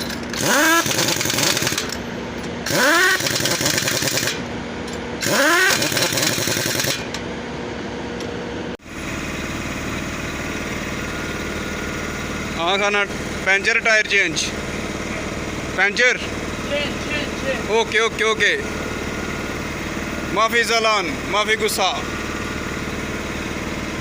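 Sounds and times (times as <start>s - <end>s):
pneumatic impact wrench hammering: 0.0s - 7.3s
steady engine hum: 0.0s - 24.0s.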